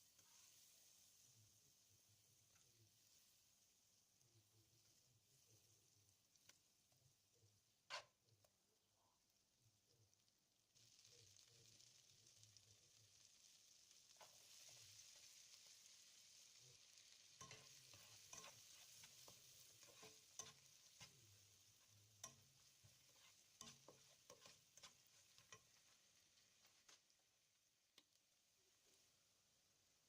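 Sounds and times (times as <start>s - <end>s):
food sizzling in a pan: 0.0s - 30.0s
spatula scraping and knocking pan: 17.4s - 27.1s.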